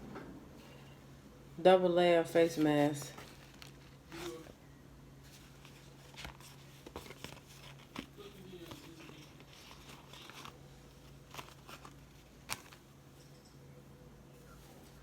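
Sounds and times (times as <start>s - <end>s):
packaging crinkling: 2.8s - 4.6s, 5.2s - 12.9s.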